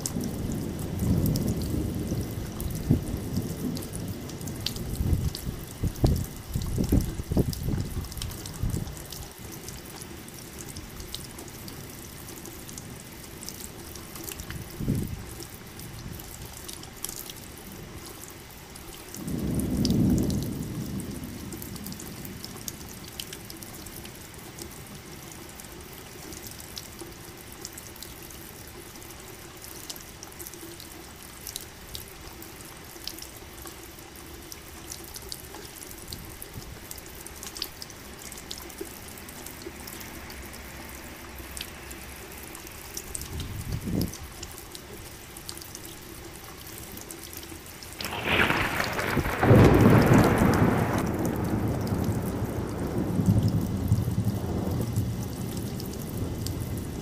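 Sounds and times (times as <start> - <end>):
steady rain: 0.0 - 57.0
water dripping: 0.0 - 57.0
thunder rumbling: 0.2 - 8.9, 19.2 - 22.6, 48.0 - 57.0.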